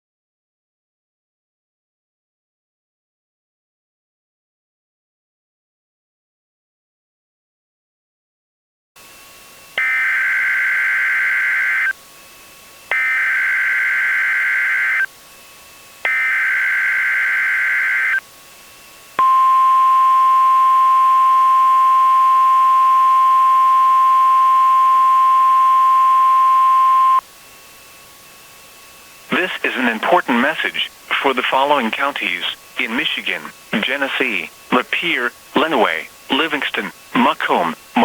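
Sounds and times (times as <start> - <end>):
harsh data bursts: 29.3 - 38.0.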